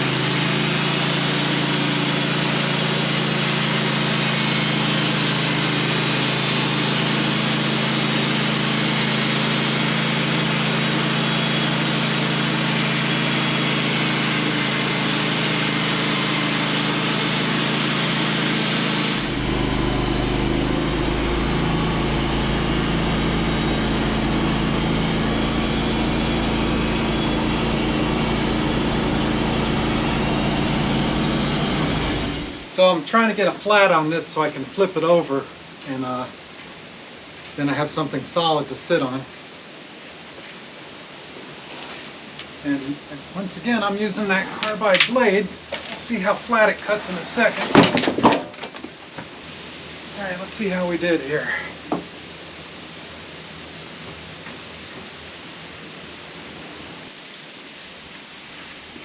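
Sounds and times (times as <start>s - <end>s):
sawmill blade cutting log: 0.0s - 32.9s.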